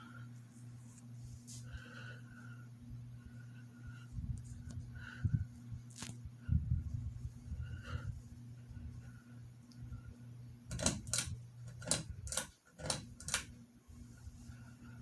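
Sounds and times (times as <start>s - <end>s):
ceiling fan motor humming: 0.0s - 15.0s
pull-chain switch clicks: 10.7s - 13.5s.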